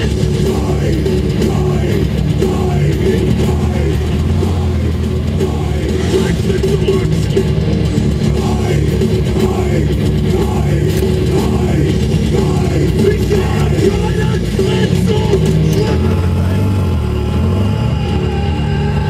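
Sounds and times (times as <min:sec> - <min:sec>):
loud heavy metal music: 0:00.0 - 0:19.0.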